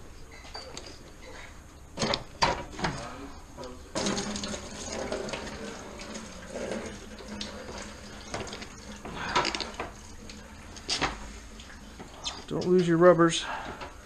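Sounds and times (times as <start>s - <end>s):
liquid pouring into a bucket: 3.9s - 12.2s.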